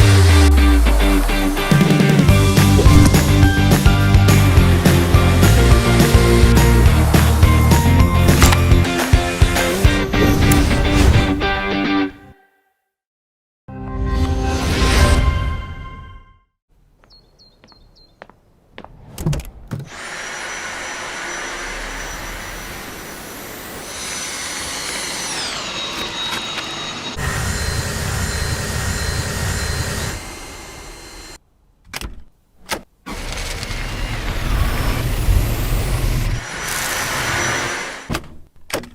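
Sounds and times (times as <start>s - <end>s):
heavy low rumble: 2.3s - 8.9s
short clicks: 8.4s - 8.7s
handheld vacuum cleaner whine: 19.9s - 31.4s, 33.1s - 38.2s.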